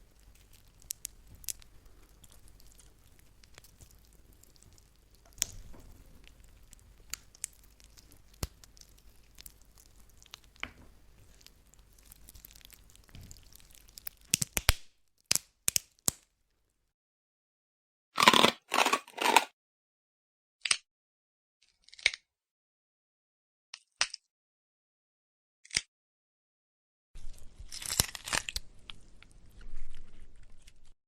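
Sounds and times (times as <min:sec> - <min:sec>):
faint crackles and clicks: 0:00.0 - 0:16.3, 0:27.2 - 0:31.0
sharp bone cracks: 0:12.6 - 0:16.2, 0:18.2 - 0:19.5, 0:27.7 - 0:28.6
loud crunches: 0:18.2 - 0:19.5.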